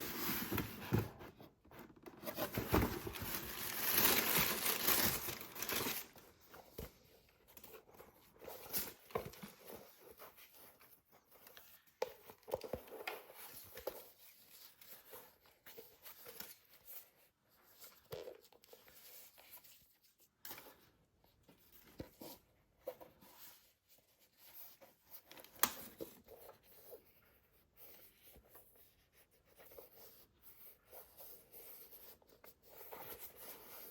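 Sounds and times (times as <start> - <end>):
paper packaging rustling and tearing: 0.0 - 6.3.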